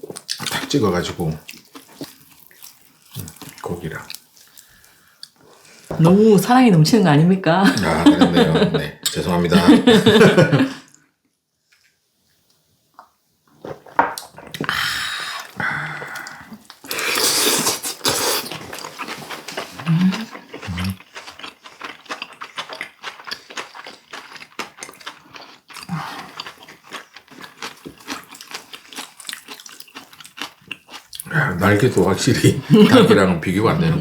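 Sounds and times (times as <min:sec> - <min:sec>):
wet chewing: 0:01.4 - 0:05.9, 0:15.4 - 0:32.2
wet slurping: 0:15.4 - 0:21.0.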